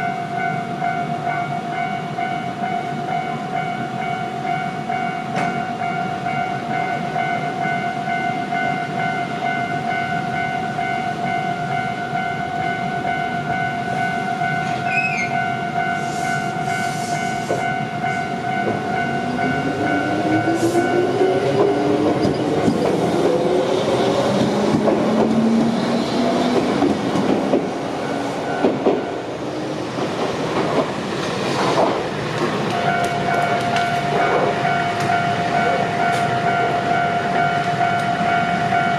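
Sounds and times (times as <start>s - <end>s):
train wheels rumbling: 11.6s - 38.9s
level crossing bell ringing: 32.8s - 38.9s.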